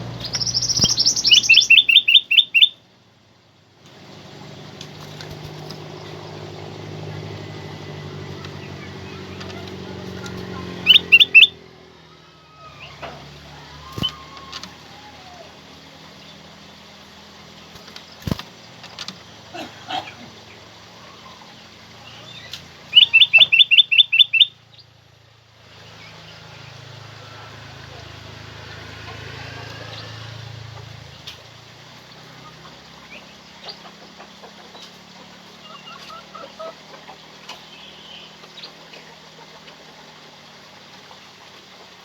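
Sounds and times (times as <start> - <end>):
bird calling rapid notes: 0.0 - 2.8, 8.4 - 13.0, 13.7 - 15.4, 22.1 - 24.6.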